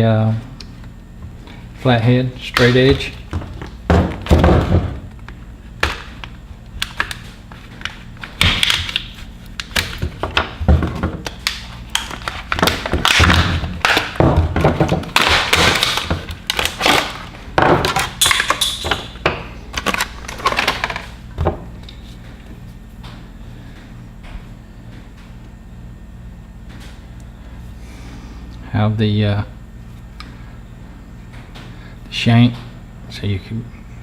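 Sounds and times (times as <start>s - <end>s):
sharp knocks and thunks: 3.3s - 5.1s
packaging crinkling and rustling: 5.1s - 18.6s, 19.7s - 21.2s.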